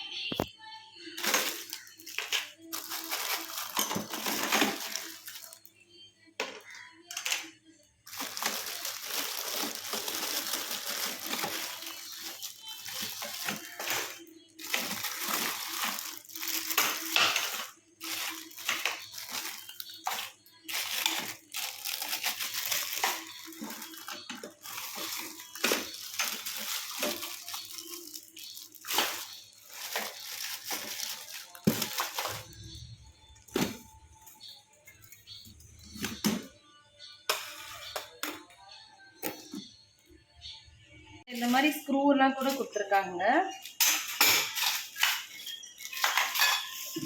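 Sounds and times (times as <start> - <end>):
packaging rustling and crinkling: 1.2 - 5.7, 8.1 - 32.8.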